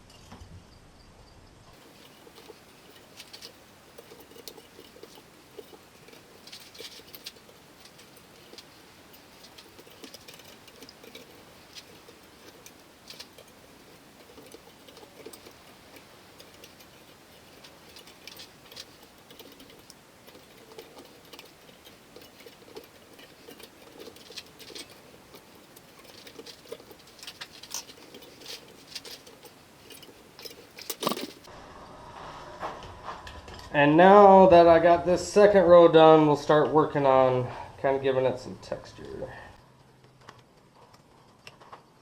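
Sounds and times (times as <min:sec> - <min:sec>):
metal clank: 0:01.8 - 0:31.5.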